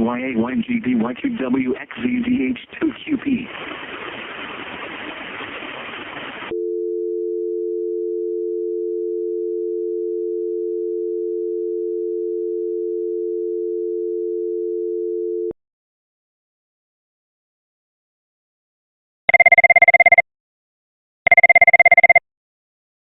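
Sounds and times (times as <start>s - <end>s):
static hiss: 1.8s - 6.5s
two-tone alert signal: 21.3s - 22.2s.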